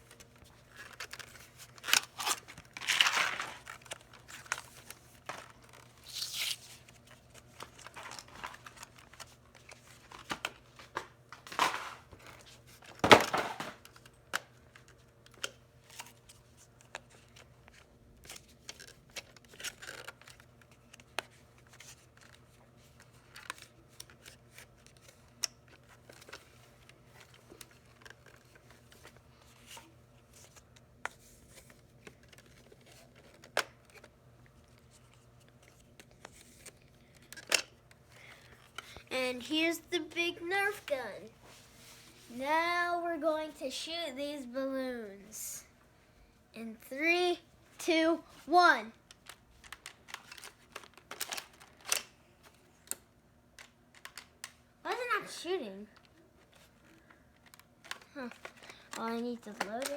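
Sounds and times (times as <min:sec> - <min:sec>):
plastic crinkling: 0:00.0 - 0:14.1, 0:49.0 - 0:52.6
packaging ripping: 0:00.7 - 0:04.5, 0:05.6 - 0:06.7, 0:49.7 - 0:52.1.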